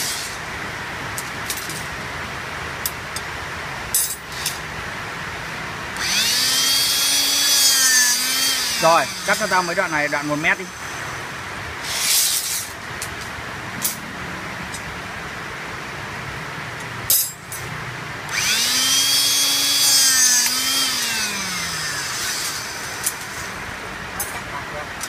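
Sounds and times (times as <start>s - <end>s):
rebar cutter motor whining: 6.0s - 12.7s, 18.3s - 23.6s.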